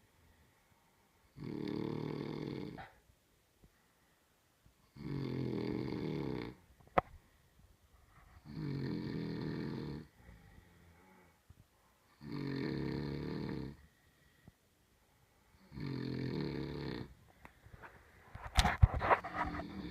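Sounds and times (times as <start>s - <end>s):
quiet breathing out: 0.0s - 3.0s, 6.0s - 18.4s
person snoring heavily: 1.3s - 2.8s, 4.9s - 6.6s, 8.4s - 11.3s, 12.2s - 13.8s, 15.6s - 17.1s.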